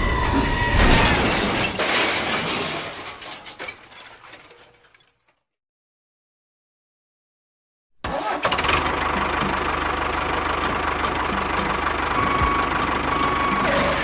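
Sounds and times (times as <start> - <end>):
engine running with rattling beat: 8.6 - 14.0.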